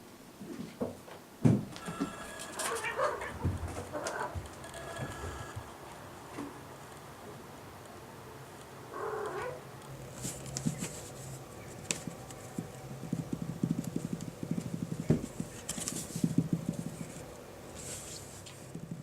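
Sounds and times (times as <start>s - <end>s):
cat call: 1.8s - 5.5s.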